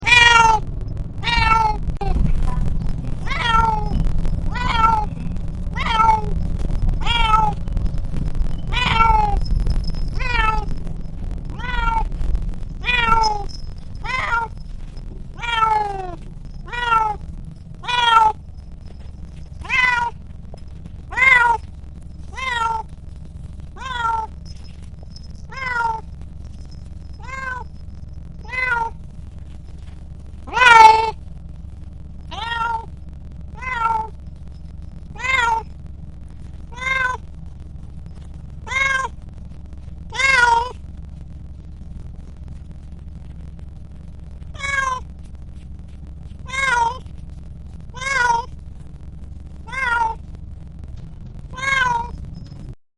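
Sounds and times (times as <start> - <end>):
cat meowing: 0.0 - 6.4, 7.0 - 7.6, 8.5 - 9.5, 10.2 - 10.7, 11.5 - 12.2, 12.8 - 14.6, 15.3 - 17.2, 17.8 - 18.4, 19.6 - 20.2, 21.1 - 21.6, 22.3 - 22.9, 23.8 - 24.4, 25.5 - 26.0, 27.2 - 27.7, 28.4 - 29.0, 30.5 - 31.2, 32.3 - 32.9, 33.5 - 34.2, 35.1 - 35.7, 36.7 - 37.2, 38.6 - 39.2, 40.1 - 40.8, 44.5 - 45.1, 46.4 - 47.0, 47.9 - 48.5, 49.6 - 50.2, 51.5 - 52.2
low bus rumble: 0.0 - 52.8.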